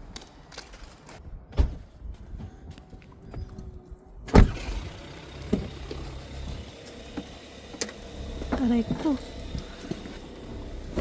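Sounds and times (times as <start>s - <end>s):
car door slam: 4.3s - 6.1s
knocks and thuds of car entry: 4.3s - 11.0s
low steady rumble: 4.6s - 11.0s.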